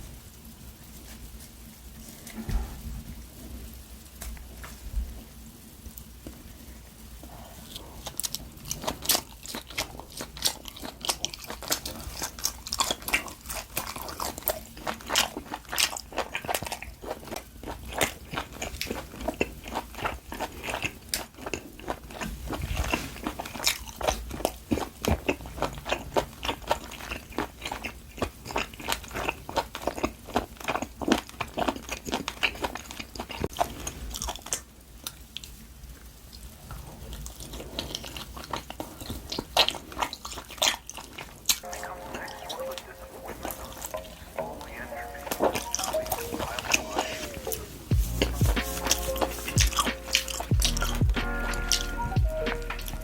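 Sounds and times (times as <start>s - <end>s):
close chewing with wet mouth clicks: 7.7s - 35.5s, 36.3s - 52.0s.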